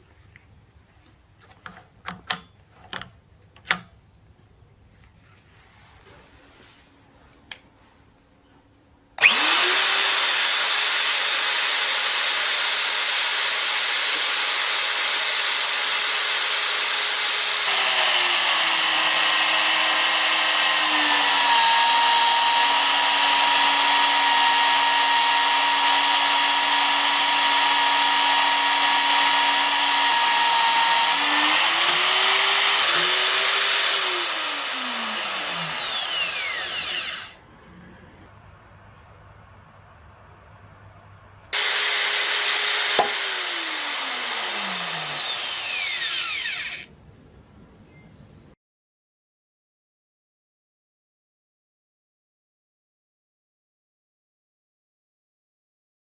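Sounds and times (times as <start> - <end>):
drill cutter boring into steel: 9.2 - 37.4, 41.6 - 46.9
magnetic drill running: 9.2 - 37.4, 41.6 - 46.9.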